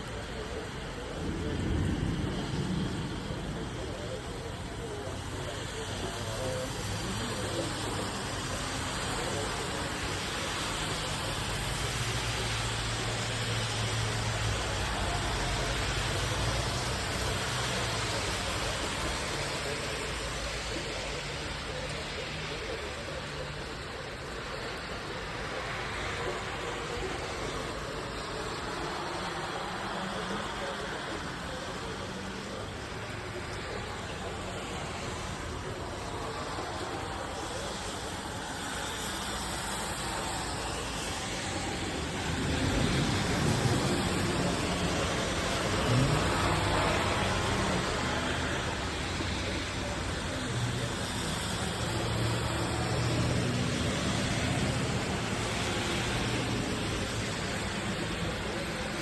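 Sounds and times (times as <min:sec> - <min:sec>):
heavy rain hissing: 0:00.0 - 0:59.0
low thunder rumble: 0:00.8 - 0:05.4.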